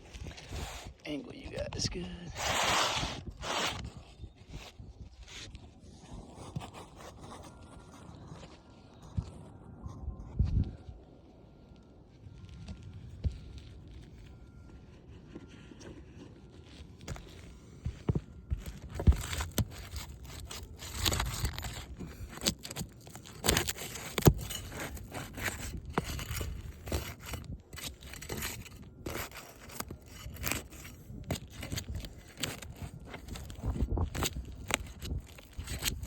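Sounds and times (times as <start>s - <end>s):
scraping and knocking on roof shingle: 14.7s - 36.0s.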